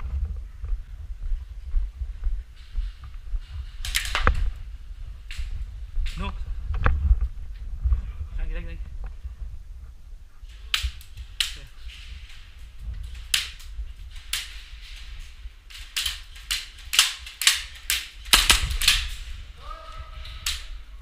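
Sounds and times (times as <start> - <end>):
airsoft pistols firing: 15.7 - 19.4.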